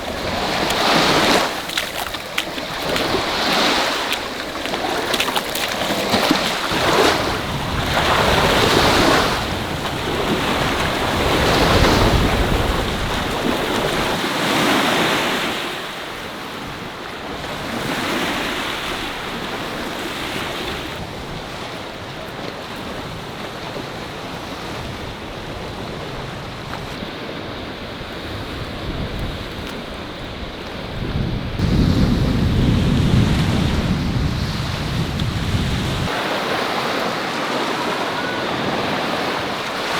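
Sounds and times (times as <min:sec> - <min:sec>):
wind buffeting microphone: 0:00.0 - 0:14.2, 0:20.6 - 0:36.7
sea waves breaking on beach: 0:00.0 - 0:39.9.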